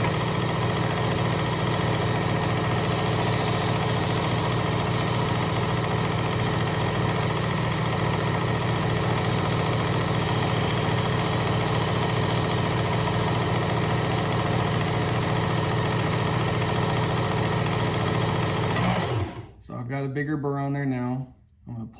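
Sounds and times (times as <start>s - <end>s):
belt sharpener motor running: 0.0s - 19.6s
knife grinding on abrasive belt: 2.7s - 5.8s, 10.2s - 13.5s.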